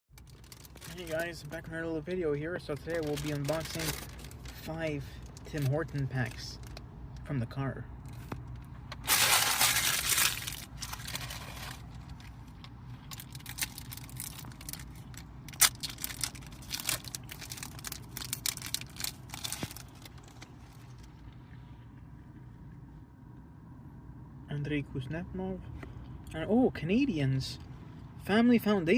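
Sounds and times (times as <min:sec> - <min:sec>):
wrapper crinkling: 0:00.1 - 0:01.6, 0:02.7 - 0:06.8, 0:09.0 - 0:12.4, 0:13.0 - 0:21.1
low steady hum: 0:00.1 - 0:28.9
card pack tearing open: 0:02.8 - 0:04.6, 0:09.0 - 0:11.9, 0:13.1 - 0:20.4.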